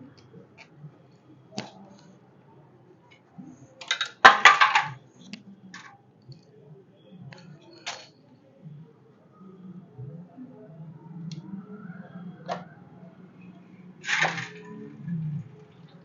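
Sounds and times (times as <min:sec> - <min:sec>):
metal clatter: 0:03.8 - 0:05.0, 0:14.0 - 0:14.7.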